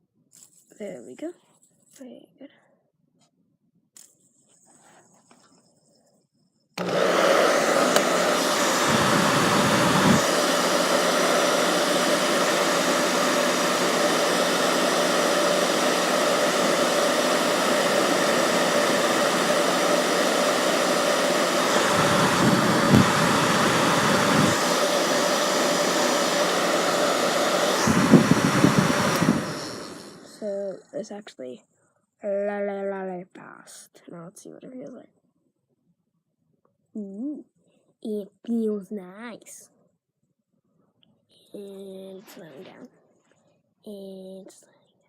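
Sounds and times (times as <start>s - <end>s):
hair dryer blowing: 6.8s - 30.7s.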